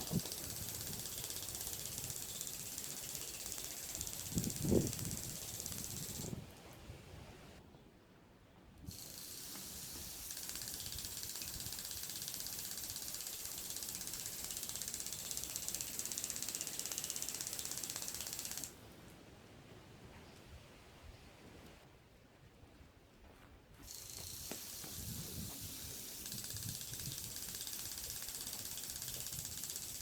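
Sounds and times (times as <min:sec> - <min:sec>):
water sprinkler spraying: 0:00.0 - 0:06.6, 0:08.9 - 0:18.8, 0:23.8 - 0:30.0.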